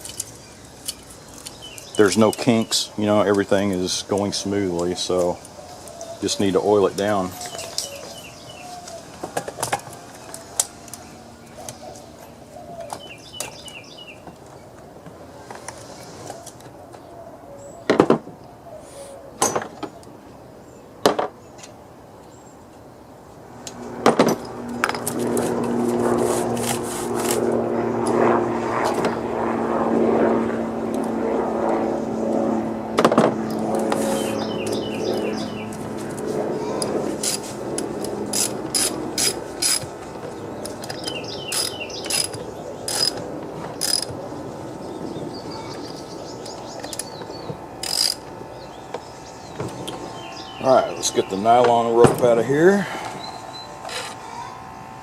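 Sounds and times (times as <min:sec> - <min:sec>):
bird cooing: 0:04.9 - 0:09.3, 0:10.0 - 0:13.8, 0:16.1 - 0:19.4, 0:36.6 - 0:36.9
engine hum with tones: 0:22.9 - 0:55.0.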